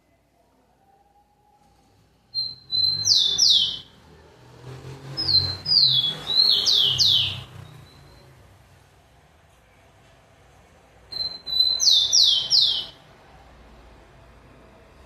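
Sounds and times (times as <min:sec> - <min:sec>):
sparrow singing clear whistles: 0:02.3 - 0:03.9, 0:05.2 - 0:08.3, 0:11.1 - 0:13.0.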